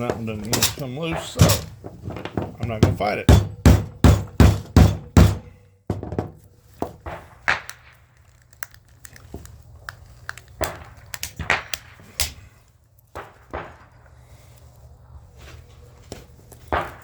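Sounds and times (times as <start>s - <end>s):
clatter of metal and plastic parts: 0.0s - 3.0s.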